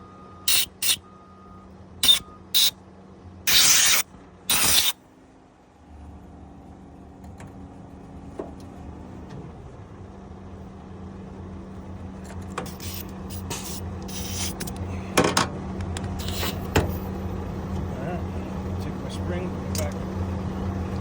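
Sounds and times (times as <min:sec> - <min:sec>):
engine or compressor humming: 0:00.0 - 0:21.0
compressed-air blowgun hissing: 0:03.5 - 0:04.9, 0:12.7 - 0:14.6, 0:16.2 - 0:16.7.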